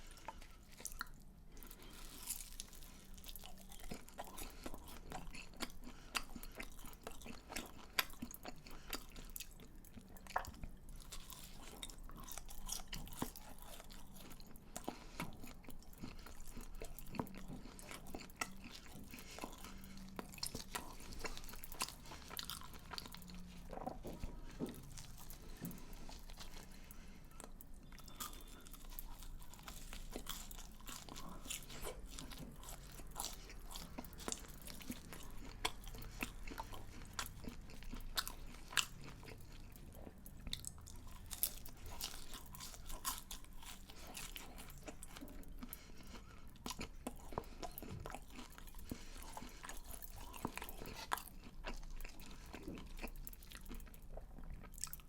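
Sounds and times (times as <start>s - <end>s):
chewing crunchy fried food: 0.0s - 55.0s.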